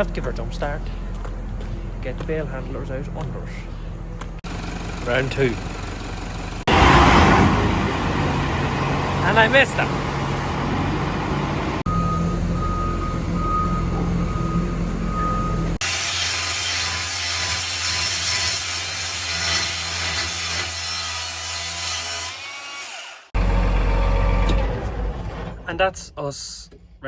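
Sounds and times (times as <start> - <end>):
diesel engines running: 0.0 - 15.8, 23.3 - 25.8.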